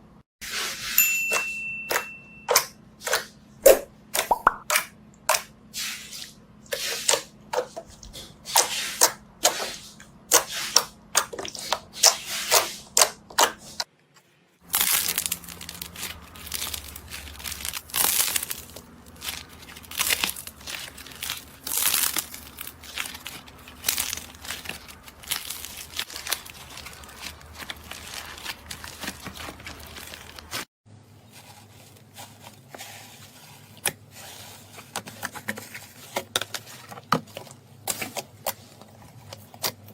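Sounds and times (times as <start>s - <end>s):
slime crackling and crunching: 14.6s - 39.8s.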